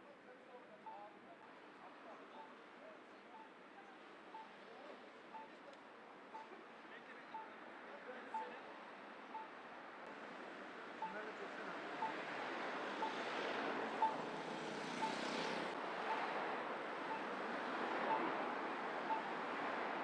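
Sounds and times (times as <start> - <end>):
street traffic noise: 0.0 - 20.0
short beeps: 3.3 - 3.5, 4.3 - 4.5, 5.3 - 5.6, 6.3 - 6.5, 7.3 - 7.5, 8.3 - 8.5, 9.3 - 9.5, 11.0 - 11.2, 14.0 - 14.2, 15.0 - 15.2, 16.1 - 16.3, 17.1 - 17.3, 18.1 - 18.3, 19.1 - 19.3.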